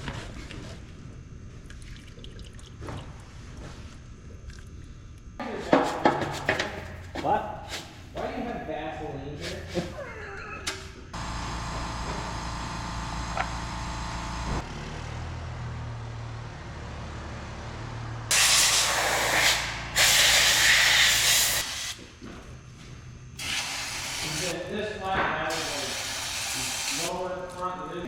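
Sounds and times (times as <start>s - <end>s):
mechanical hum: 0.0s - 28.0s
loud bursts of hissing: 18.3s - 22.0s, 23.4s - 24.6s, 25.5s - 27.2s.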